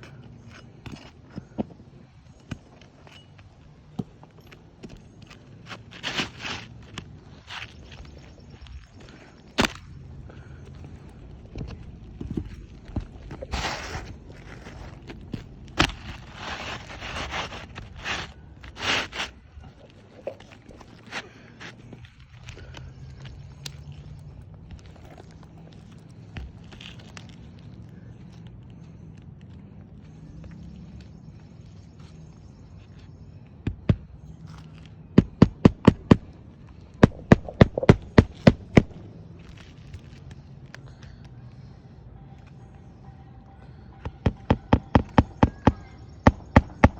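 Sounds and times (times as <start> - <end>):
scraping on roof shingles: 11.7 - 22.0
hammer striking roof shingle: 35.2 - 36.3, 37.0 - 39.0, 44.0 - 46.9.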